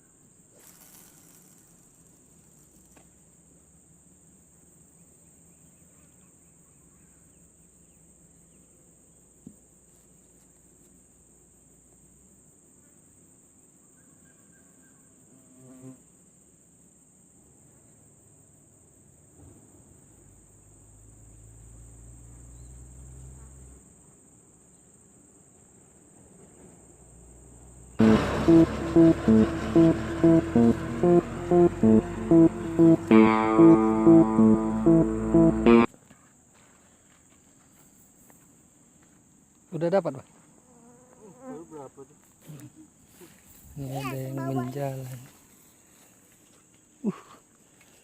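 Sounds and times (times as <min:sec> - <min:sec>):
insects chirring: 0:00.0 - 0:19.2, 0:26.9 - 0:48.0
faint call: 0:28.0 - 0:35.9.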